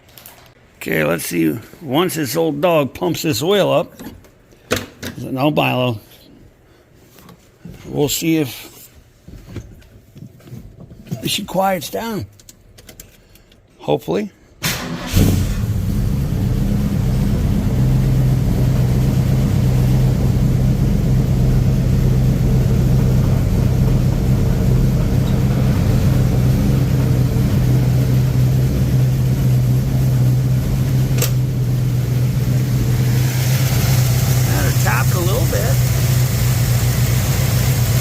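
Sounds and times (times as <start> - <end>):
truck engine idling: 16.1 - 38.0.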